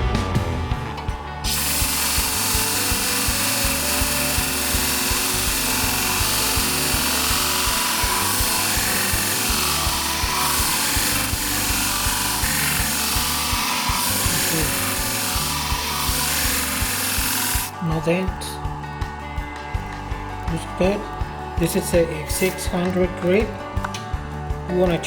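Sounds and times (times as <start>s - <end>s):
background music with beat: 0.0s - 11.1s, 11.7s - 25.0s
blade on sharpening wheel hissing: 1.4s - 18.1s, 21.6s - 22.9s.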